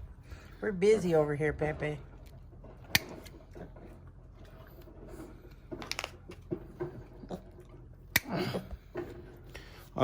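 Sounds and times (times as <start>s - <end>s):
shears snipping hoof: 2.8s - 3.8s.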